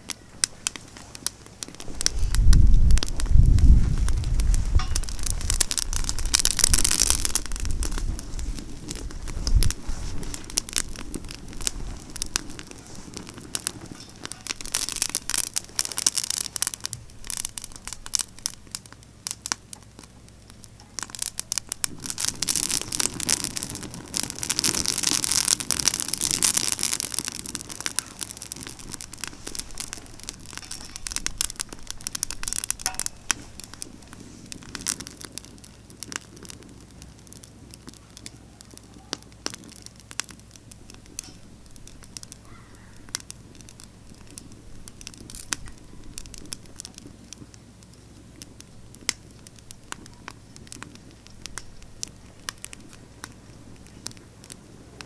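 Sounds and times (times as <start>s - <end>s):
campfire crackling and popping: 0.0s - 55.0s
wind gusting on microphone: 1.8s - 16.3s.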